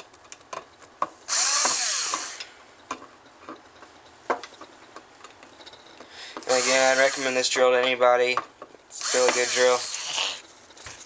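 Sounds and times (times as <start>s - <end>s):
tool and parts clicking: 0.1s - 3.6s
power drill spinning: 1.3s - 2.4s, 6.4s - 7.5s, 9.0s - 10.4s.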